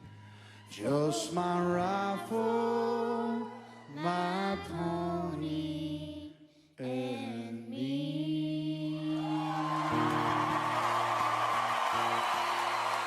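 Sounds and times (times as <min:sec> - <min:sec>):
voices singing in harmony: 0:00.6 - 0:10.7
whoops and cheering: 0:03.2 - 0:04.2, 0:09.0 - 0:13.0.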